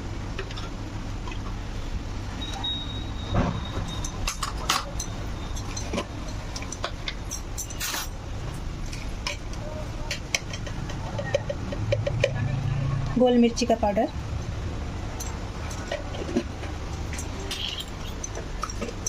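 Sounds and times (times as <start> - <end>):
steady low hum: 0.0 - 19.0
kitchen utensils clinking: 3.7 - 12.5, 15.1 - 19.0.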